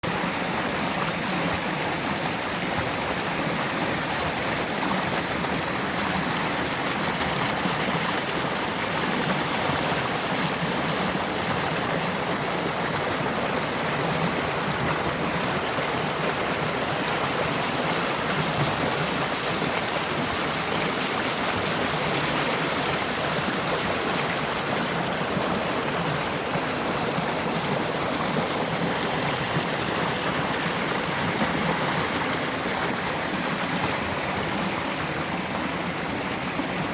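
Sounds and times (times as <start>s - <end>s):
stream flowing: 0.0s - 36.9s.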